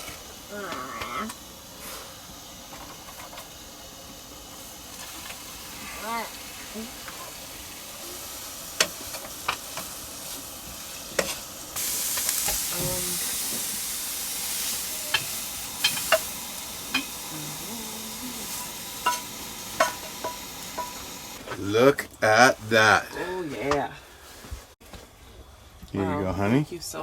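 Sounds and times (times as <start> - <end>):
vegetables sizzling in a pan: 0.0 - 24.4
utensil knocking against pan: 19.0 - 21.0.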